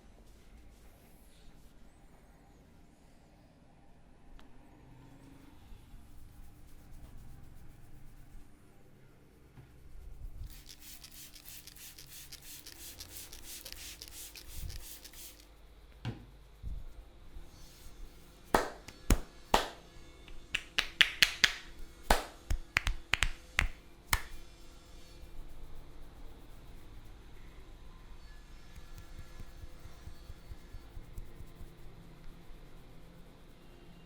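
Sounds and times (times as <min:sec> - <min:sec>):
fingers rubbing hair and scalp: 0:10.4 - 0:15.5, 0:18.6 - 0:24.6, 0:28.7 - 0:33.6
sharp cracks and snaps: 0:18.6 - 0:24.4.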